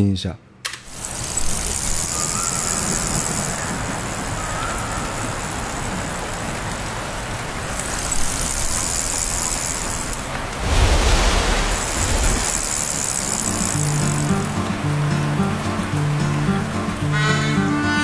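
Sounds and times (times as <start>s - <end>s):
vehicle riding noise: 0.9s - 18.0s
bright hiss: 7.3s - 16.9s.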